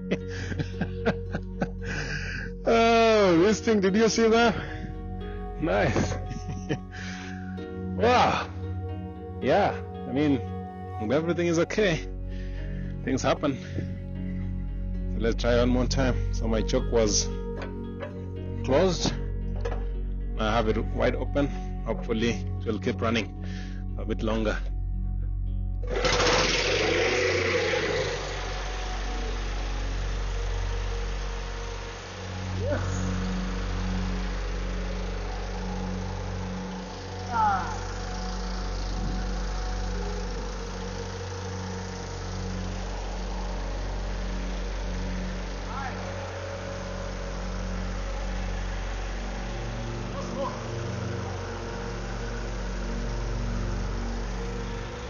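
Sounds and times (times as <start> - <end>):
pressure washer engine running: 0.0 - 7.5, 25.8 - 55.0.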